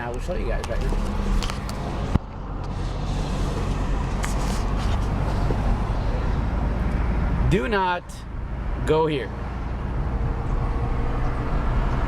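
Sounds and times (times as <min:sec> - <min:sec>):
car engine hum: 0:00.0 - 0:12.0
road and tyre noise: 0:00.0 - 0:12.0.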